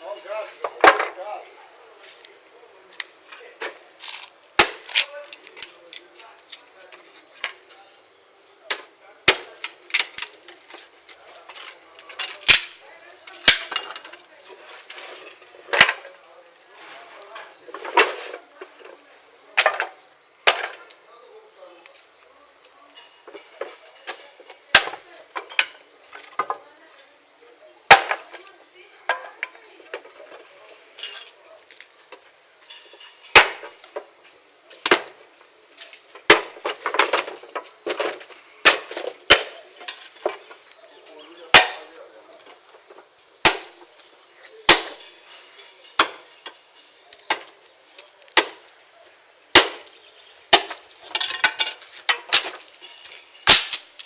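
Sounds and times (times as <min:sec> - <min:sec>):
wood bonfire crackling: 0:00.0 - 0:19.7, 0:29.6 - 0:54.0
sharp pops from fire: 0:03.8 - 0:06.3, 0:08.6 - 0:10.8, 0:12.2 - 0:13.8, 0:32.6 - 0:34.1, 0:34.8 - 0:39.6, 0:43.4 - 0:43.9, 0:44.7 - 0:45.2, 0:47.1 - 0:48.7, 0:49.5 - 0:51.5, 0:53.4 - 0:54.0.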